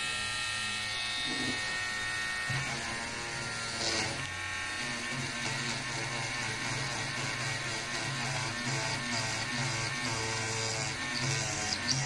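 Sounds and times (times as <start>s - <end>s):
rotary tool drilling whine: 0.0s - 12.0s.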